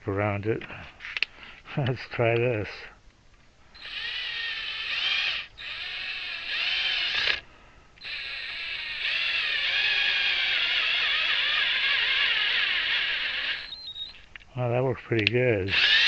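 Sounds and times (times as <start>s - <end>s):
pulley whining squeal: 8.0s - 14.2s.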